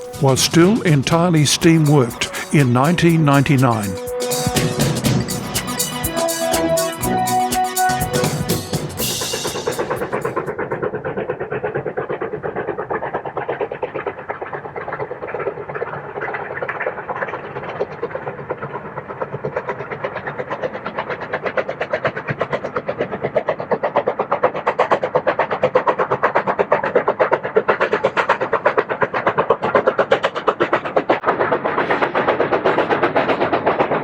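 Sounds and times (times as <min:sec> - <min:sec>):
steam locomotive exhaust beating: 0:00.0 - 0:13.4.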